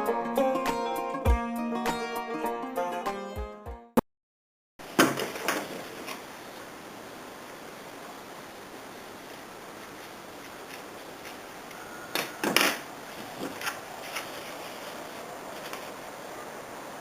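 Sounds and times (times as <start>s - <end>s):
faint steady hiss: 4.8s - 17.0s
knocks and rustles of handling: 4.9s - 6.2s, 12.2s - 16.0s.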